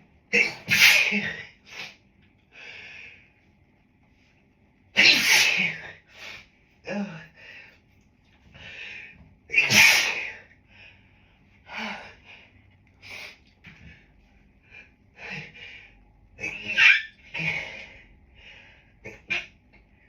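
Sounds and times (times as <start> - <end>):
person sneezing: 0.3 - 2.0, 5.0 - 6.0, 9.5 - 10.5.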